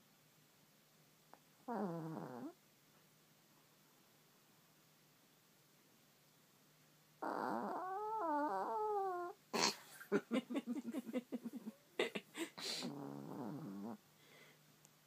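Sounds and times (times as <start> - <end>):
dog snoring: 1.6 - 2.6, 7.2 - 9.7, 12.6 - 14.0
dog snorting: 1.7 - 2.6, 12.6 - 14.0.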